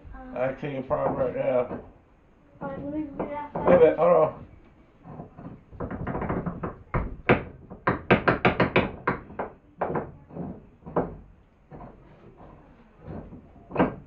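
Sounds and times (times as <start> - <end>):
sharp knocks on hard object: 5.1 - 11.9, 13.0 - 14.0.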